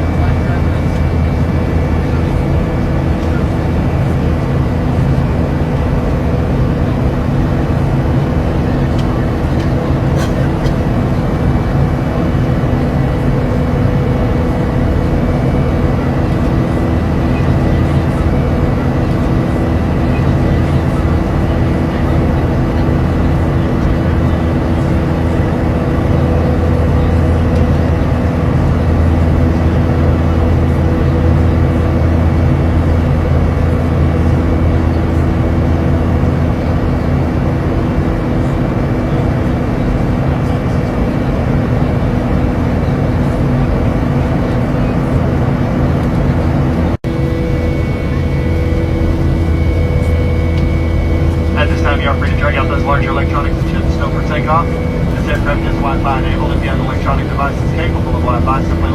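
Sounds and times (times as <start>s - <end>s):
airliner cabin engine rush: 0.0s - 58.9s
low drone: 0.0s - 58.9s
steady hums: 0.0s - 58.9s.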